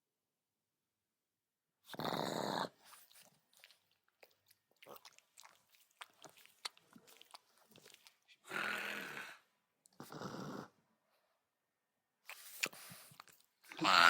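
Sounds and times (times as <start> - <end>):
dog snorting: 10.0 - 10.7.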